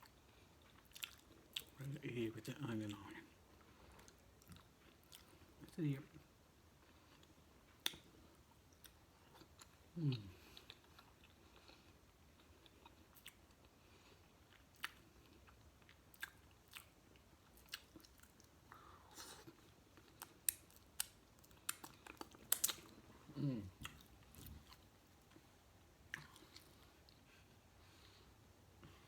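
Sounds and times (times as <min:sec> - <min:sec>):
chewing and biting: 0:14.2 - 0:18.5, 0:19.3 - 0:23.0
wet clicks and cracks: 0:20.5 - 0:22.8.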